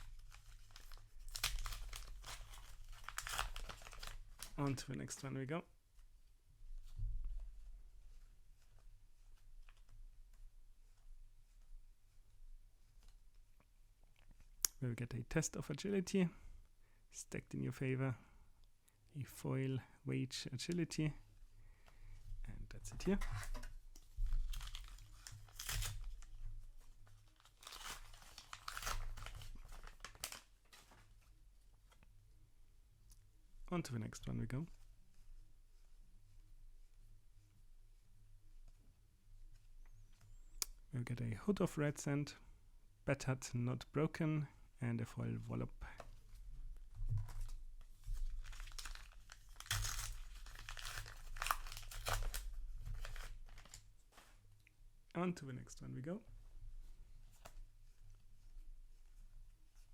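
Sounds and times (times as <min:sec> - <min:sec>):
paper crinkling and tearing: 0:00.0 - 0:04.8, 0:24.3 - 0:26.4, 0:27.0 - 0:31.2, 0:47.4 - 0:54.4.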